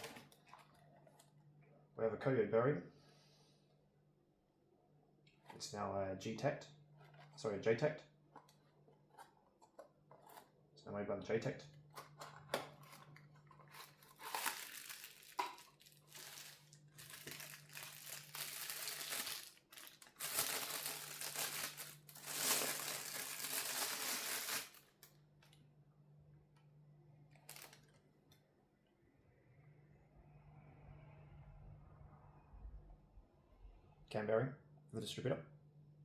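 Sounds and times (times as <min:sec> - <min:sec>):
packaging crinkling and rustling: 0:00.0 - 0:01.3, 0:12.0 - 0:25.1, 0:27.4 - 0:28.0.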